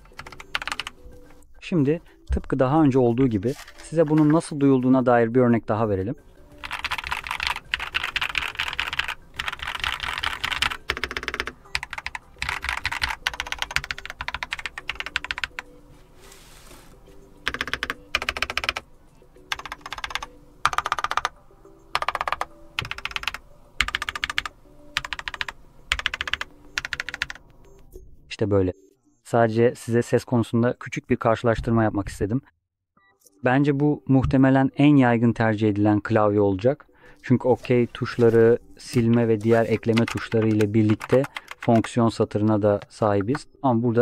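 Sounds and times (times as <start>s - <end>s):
typing on mechanical keyboard: 0.0s - 1.0s, 6.6s - 15.6s, 17.4s - 18.8s, 19.5s - 21.3s, 21.9s - 27.4s, 39.1s - 42.0s.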